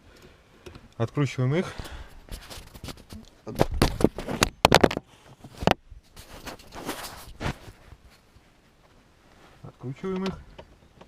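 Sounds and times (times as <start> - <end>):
light scratching: 2.2 - 4.5, 5.4 - 8.5.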